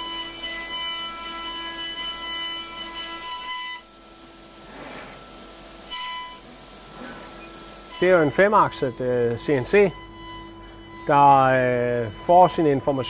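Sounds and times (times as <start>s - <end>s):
mill spindle high whine: 0.0s - 13.0s
milling hiss: 4.2s - 10.0s.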